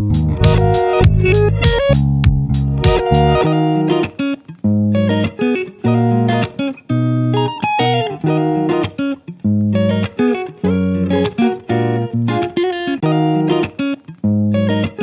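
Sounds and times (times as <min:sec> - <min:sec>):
bass: 0:00.0 - 0:03.4
electric guitar chords: 0:00.0 - 0:15.0.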